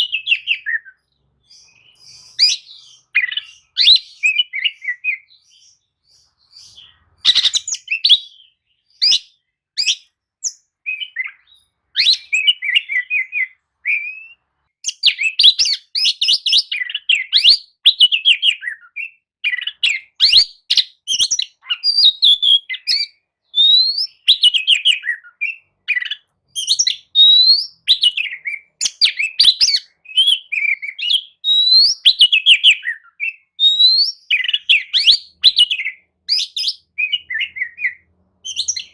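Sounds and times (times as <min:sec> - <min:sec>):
bird singing whistled song: 0:00.0 - 0:38.9.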